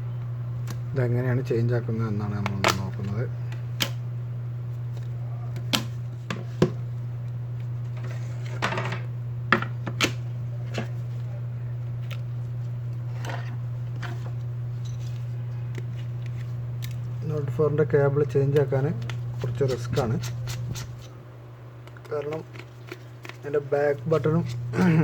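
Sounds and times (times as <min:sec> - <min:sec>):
steady low hum: 0:00.0 - 0:25.0
short scratchy rub: 0:19.4 - 0:21.1.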